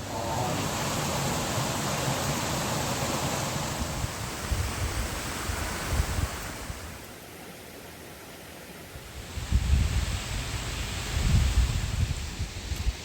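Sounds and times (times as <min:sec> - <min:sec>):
steady rushing noise: 0:00.0 - 0:07.0
wind rumbling on microphone: 0:00.0 - 0:07.1, 0:09.0 - 0:13.0.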